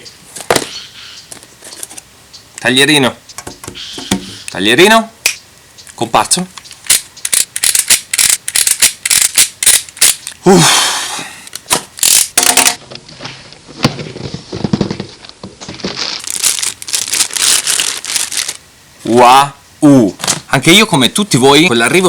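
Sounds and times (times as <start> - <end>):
packaging crackling and tearing: 15.7 - 18.6.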